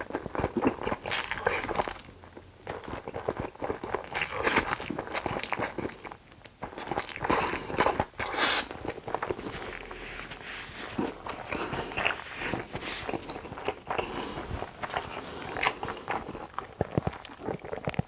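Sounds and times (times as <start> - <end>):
chewing and mouth smacks: 0.0 - 10.0, 11.0 - 18.0.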